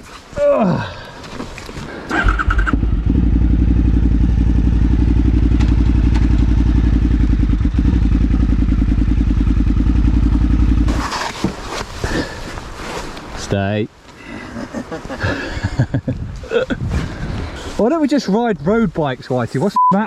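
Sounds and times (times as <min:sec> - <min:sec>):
motorcycle engine idling: 0:02.2 - 0:10.9.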